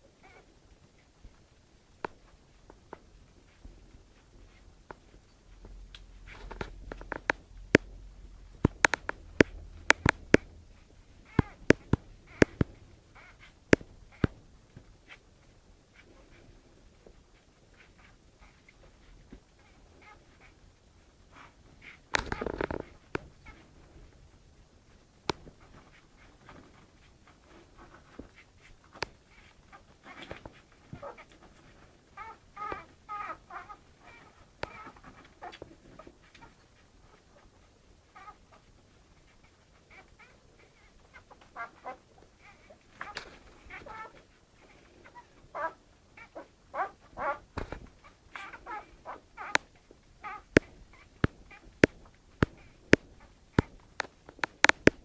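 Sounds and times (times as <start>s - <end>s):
puppies scratching and pattering: 0.2s - 24.3s, 24.9s - 55.0s
sharp clicks: 8.6s - 12.7s
sharp clicks and taps: 8.6s - 12.8s, 50.5s - 55.0s
puppies squeaking and whimpering: 13.2s - 13.5s, 32.2s - 35.6s, 39.8s - 47.4s, 48.0s - 49.6s, 50.2s - 51.7s.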